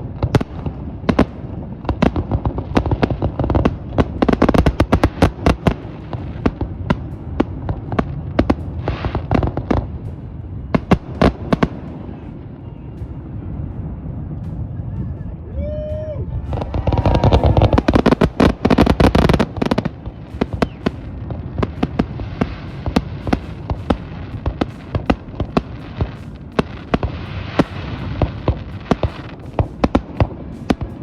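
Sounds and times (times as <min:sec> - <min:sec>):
fireworks crackling: 0:00.0 - 0:31.0
fireworks exploding: 0:00.0 - 0:31.0.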